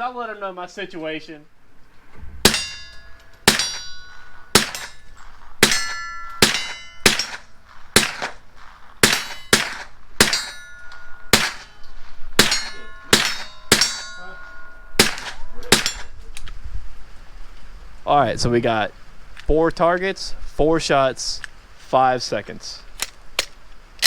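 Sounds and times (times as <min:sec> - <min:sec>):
steel targets ringing: 0:02.4 - 0:08.4, 0:09.0 - 0:16.2
gunshots: 0:02.4 - 0:10.6, 0:11.3 - 0:11.8, 0:12.4 - 0:14.1, 0:15.0 - 0:16.1.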